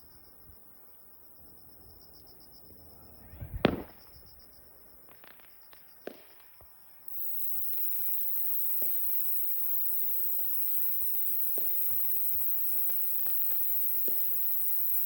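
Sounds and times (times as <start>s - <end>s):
crickets trilling: 0.0s - 15.0s
distant firework bangs: 3.0s - 6.8s.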